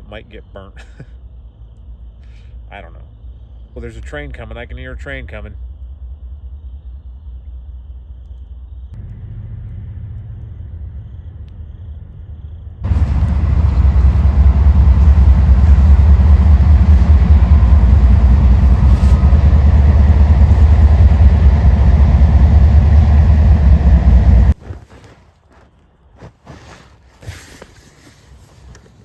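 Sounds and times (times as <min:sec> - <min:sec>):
train rumbling past: 0:12.8 - 0:24.6.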